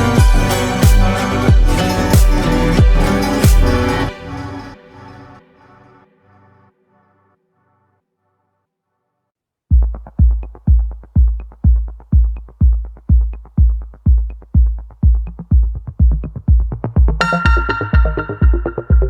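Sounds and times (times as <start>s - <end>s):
heavy kick drum: 0.0s - 3.8s, 9.7s - 19.0s
electronic dance music: 0.0s - 4.8s, 16.2s - 19.0s
synth layers: 0.0s - 5.7s.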